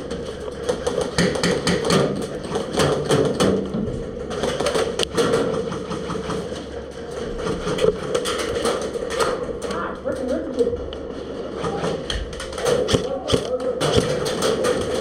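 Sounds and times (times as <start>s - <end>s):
airsoft guns firing: 12.4s - 15.0s.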